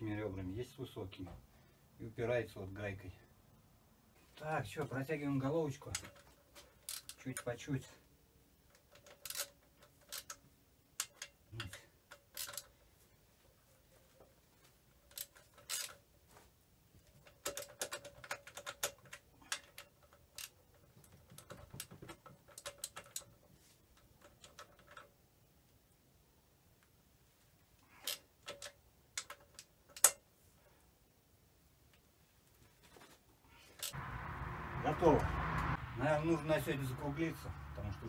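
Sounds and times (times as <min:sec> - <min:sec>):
wrench clicking on metal nuts: 0:05.9 - 0:07.5, 0:08.7 - 0:12.8, 0:15.0 - 0:16.0, 0:17.2 - 0:23.4, 0:28.0 - 0:30.2.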